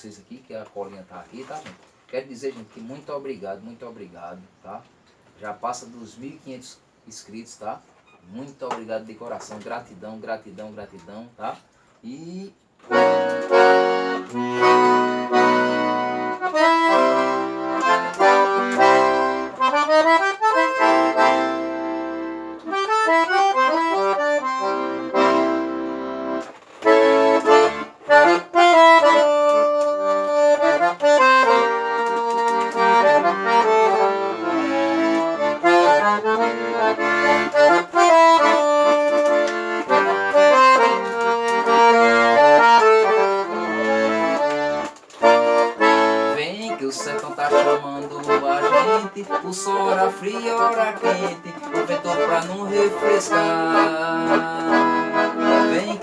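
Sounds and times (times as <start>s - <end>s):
accordion playing: 12.8s - 56.0s.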